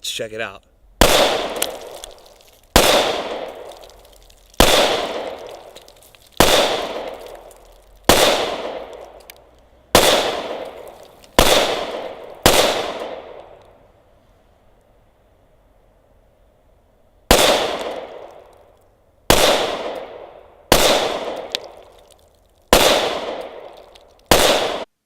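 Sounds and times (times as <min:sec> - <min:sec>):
pistol shots with echo: 0:01.0 - 0:02.1, 0:02.7 - 0:03.9, 0:04.6 - 0:05.7, 0:06.4 - 0:09.2, 0:10.0 - 0:13.5, 0:17.3 - 0:18.4, 0:19.3 - 0:22.0, 0:22.7 - 0:24.9.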